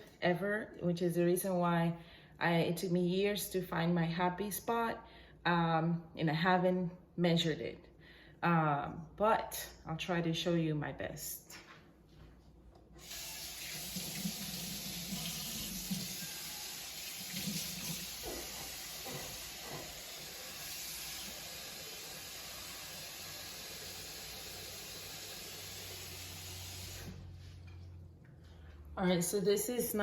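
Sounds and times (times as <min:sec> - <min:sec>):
tap running water into pot: 0:13.0 - 0:25.9.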